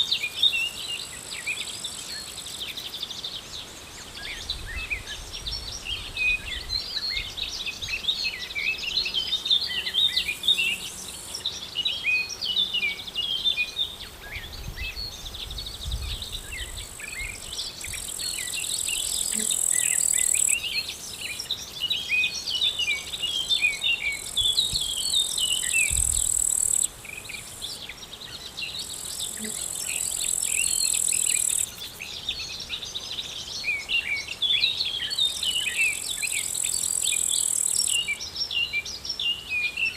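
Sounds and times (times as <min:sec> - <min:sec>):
small birds chirping: 0:00.0 - 0:39.9
insect high-pitched trill: 0:14.9 - 0:27.8, 0:28.7 - 0:32.0, 0:35.1 - 0:38.1.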